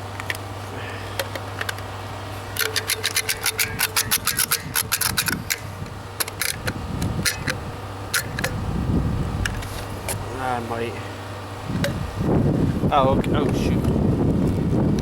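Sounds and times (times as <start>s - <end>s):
steady low hum: 0.0s - 15.0s
caulking gun ratcheting clicks: 2.6s - 8.6s.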